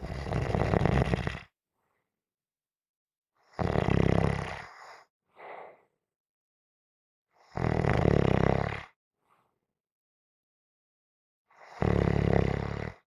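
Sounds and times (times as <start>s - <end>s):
person snoring: 0.0s - 1.4s.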